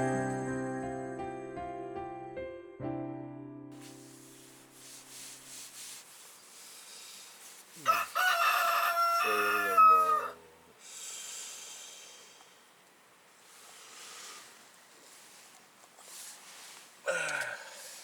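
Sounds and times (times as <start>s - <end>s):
rooster crowing: 7.8s - 10.4s.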